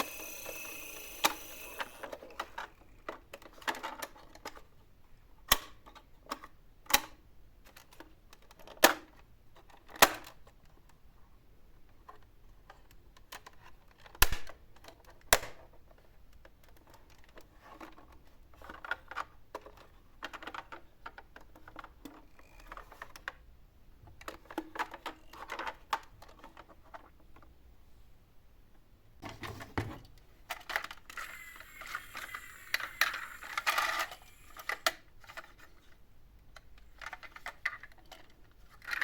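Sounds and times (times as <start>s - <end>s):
toy cars clattering on hard surface: 0.0s - 4.7s, 30.5s - 35.7s.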